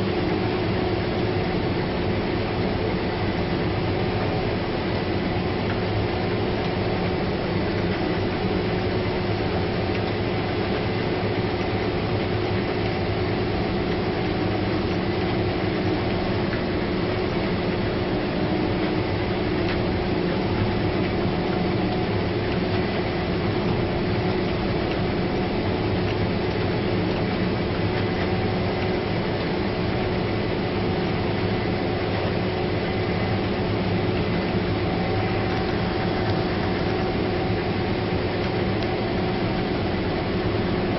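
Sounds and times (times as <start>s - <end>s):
combine harvester drone: 0.0s - 40.9s
steady machine whine: 30.0s - 40.9s.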